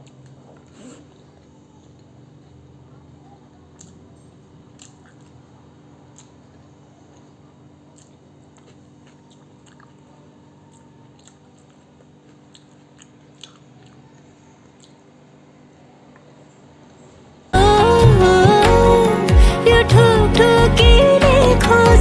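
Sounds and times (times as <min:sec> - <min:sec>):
low steady hum: 0:00.0 - 0:22.0
person chewing: 0:03.7 - 0:04.0, 0:04.7 - 0:15.2.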